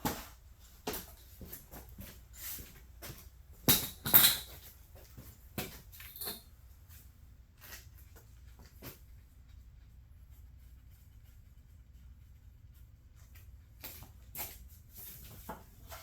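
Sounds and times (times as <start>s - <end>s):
sharp knocks and clinks: 3.6s - 4.7s, 5.6s - 6.5s.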